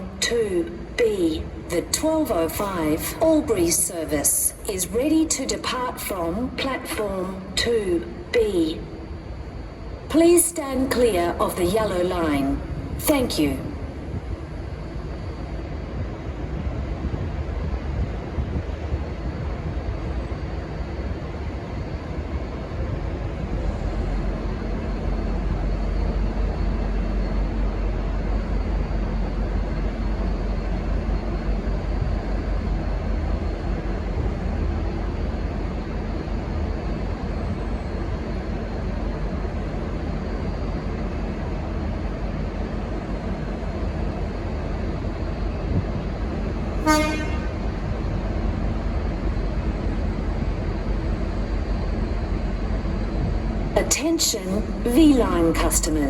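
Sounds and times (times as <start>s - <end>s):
locomotive engine rumble: 0.0s - 56.0s
locomotive horn blast: 46.8s - 47.7s.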